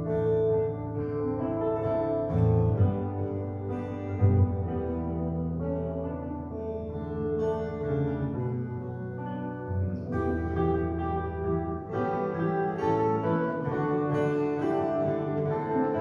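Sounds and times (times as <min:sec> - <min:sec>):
acoustic guitar strumming chords: 0:00.0 - 0:16.0.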